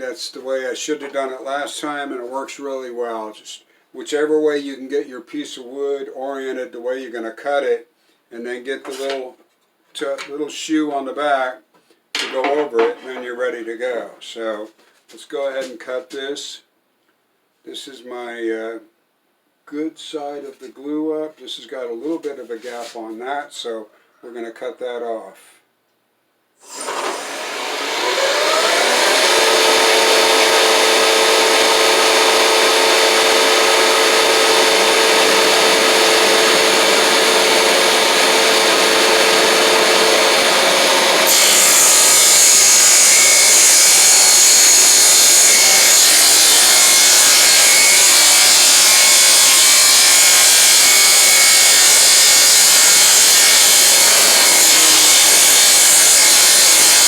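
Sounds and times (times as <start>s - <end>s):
table saw cutting wood: 26.6s - 57.0s.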